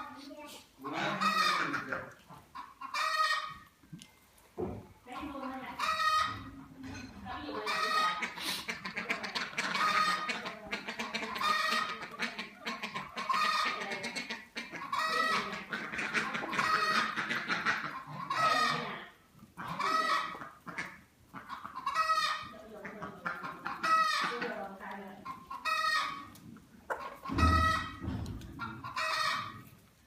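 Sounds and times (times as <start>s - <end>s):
fowl calling: 0.8s - 3.7s, 5.2s - 6.6s, 7.6s - 26.3s, 26.9s - 29.7s.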